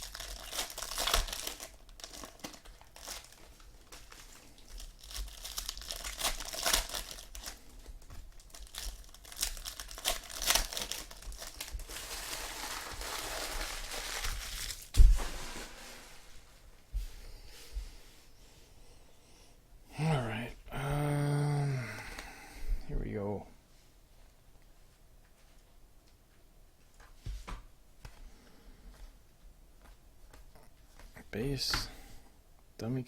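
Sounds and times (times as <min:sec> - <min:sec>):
card pack wrappers crinkling: 0:00.0 - 0:16.0.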